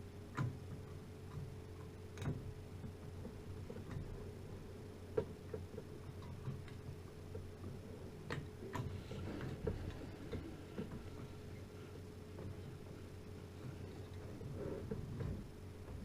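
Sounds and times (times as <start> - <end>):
steady low hum: 0.0 - 16.0
small clicks and taps of hard parts: 0.3 - 4.1, 5.1 - 11.3.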